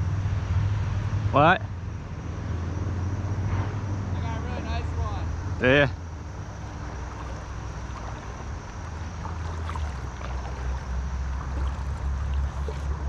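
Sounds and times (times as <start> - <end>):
river current rushing: 5.6 - 13.0.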